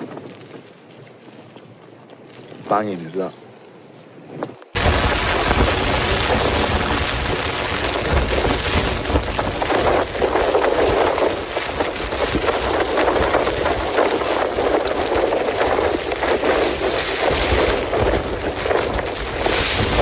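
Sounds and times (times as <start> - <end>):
wind gusts: 0.0 - 20.0
heavy rain on a tent: 4.8 - 20.0.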